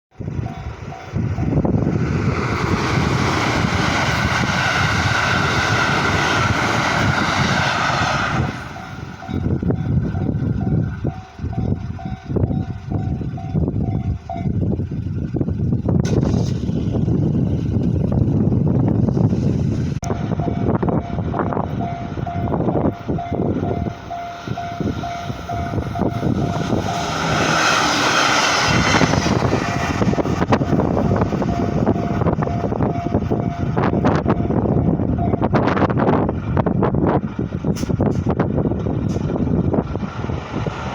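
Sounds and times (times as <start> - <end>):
wind buffeting microphone: 0.1 - 40.9
train wheels rushing on rails: 0.2 - 40.9
level-crossing warning bell ringing: 0.3 - 1.7, 8.7 - 14.6, 20.1 - 27.1, 29.6 - 35.6.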